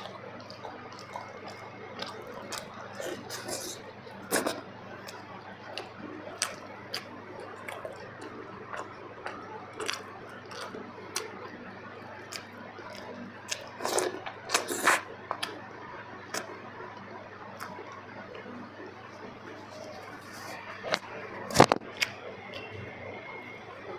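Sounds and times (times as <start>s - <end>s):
wet chewing: 0.0s - 11.6s, 12.2s - 15.6s.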